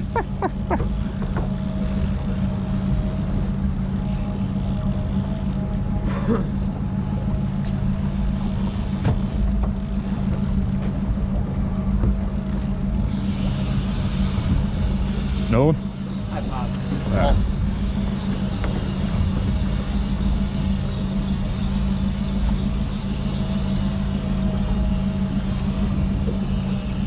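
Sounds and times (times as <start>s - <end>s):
boat engine droning: 0.0s - 27.0s.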